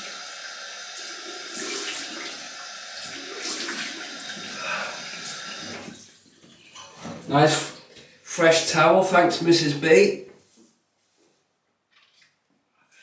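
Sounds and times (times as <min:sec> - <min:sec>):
water splashing on face: 0:01.0 - 0:02.4, 0:03.0 - 0:06.1.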